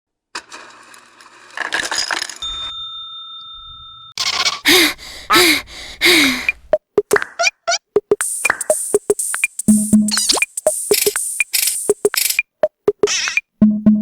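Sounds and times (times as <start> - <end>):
bell-like chime: 2.4 - 4.2
cartoon calls with bending pitch: 13.0 - 13.4.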